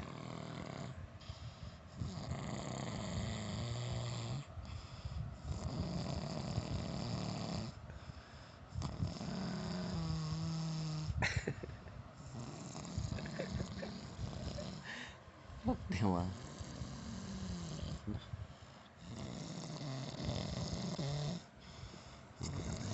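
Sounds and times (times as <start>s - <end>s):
person snoring: 8.8s - 11.1s, 12.3s - 15.2s, 16.2s - 18.2s, 19.0s - 21.4s, 22.4s - 22.9s.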